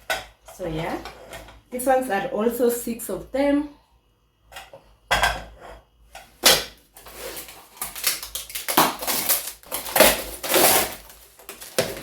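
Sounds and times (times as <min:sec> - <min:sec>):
packaging rustling and crinkling: 0:07.0 - 0:12.0.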